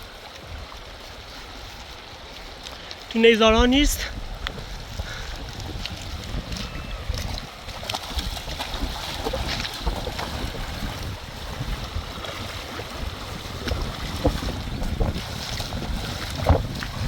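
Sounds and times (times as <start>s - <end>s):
wind buffeting microphone: 0.0s - 17.0s
knocks and splashes: 3.4s - 17.0s.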